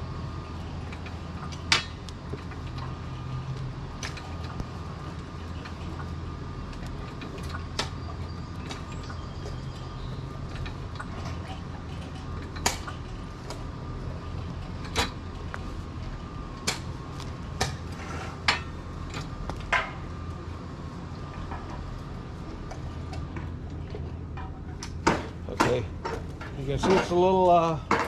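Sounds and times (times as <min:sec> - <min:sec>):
steady low hum: 0:00.0 - 0:28.0
metal tools knocking and clanking: 0:24.3 - 0:28.0.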